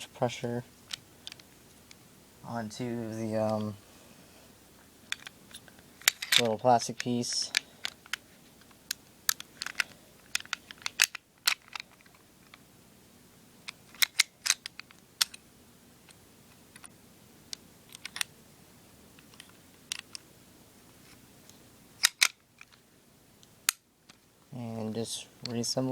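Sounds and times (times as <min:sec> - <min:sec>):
pistol parts clicking together: 0:05.1 - 0:12.6, 0:13.7 - 0:15.4, 0:17.5 - 0:18.3, 0:19.2 - 0:20.2, 0:22.0 - 0:22.8, 0:23.4 - 0:24.2.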